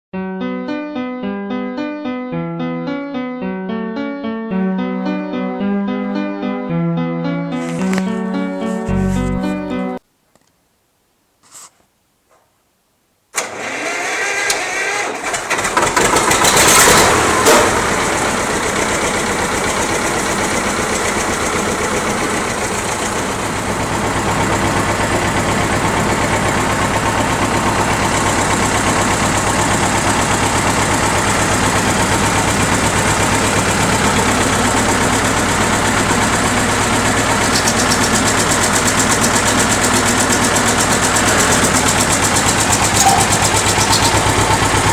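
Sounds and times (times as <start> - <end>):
tractor diesel engine idling: 7.8 - 10.0, 13.4 - 44.9
turbo whistle: 42.8 - 44.9.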